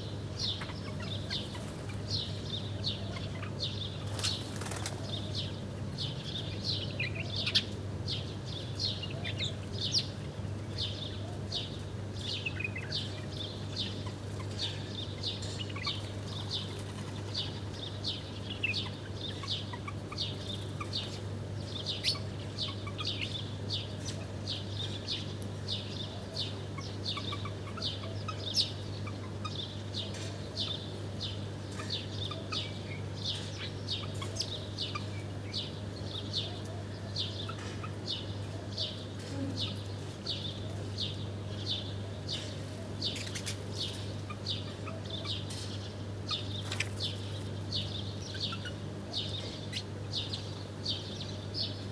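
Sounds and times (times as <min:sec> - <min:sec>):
small birds chirping: 0:00.0 - 0:51.9.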